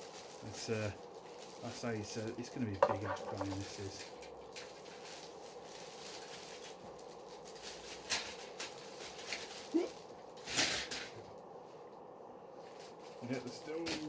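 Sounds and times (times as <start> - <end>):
plastic bags rustling: 0.0 - 11.2, 12.6 - 14.0.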